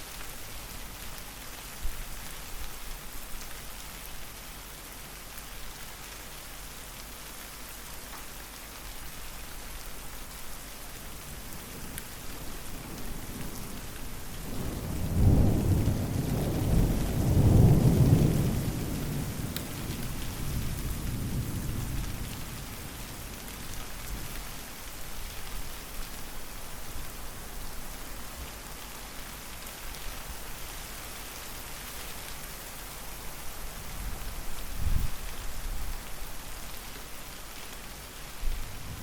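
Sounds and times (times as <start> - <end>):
steady rain falling: 0.0 - 39.0
rolling thunder: 12.6 - 22.6, 38.5 - 39.0.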